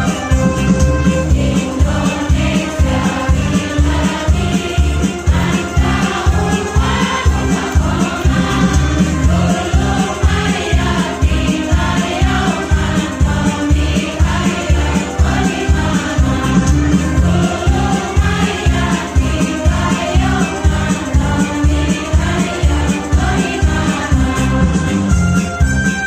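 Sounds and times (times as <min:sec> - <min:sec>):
heavy bass beat: 0:00.4 - 0:13.4
choir singing: 0:01.0 - 0:25.1.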